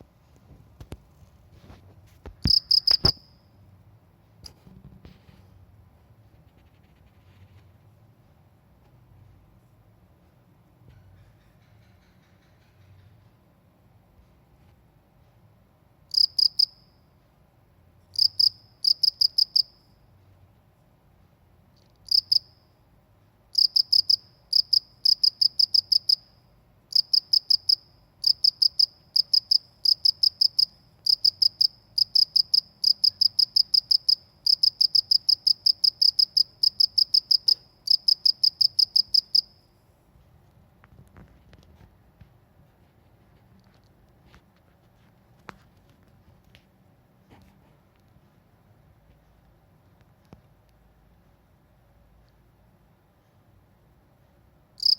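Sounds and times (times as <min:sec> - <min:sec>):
cricket chirping: 0:02.4 - 0:03.5, 0:16.1 - 0:17.0, 0:18.1 - 0:20.0, 0:21.8 - 0:22.8, 0:23.5 - 0:39.7.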